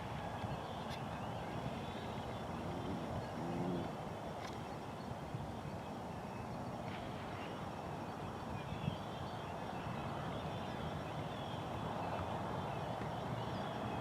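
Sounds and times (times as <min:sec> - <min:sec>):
wind buffeting microphone: 0:00.0 - 0:04.3.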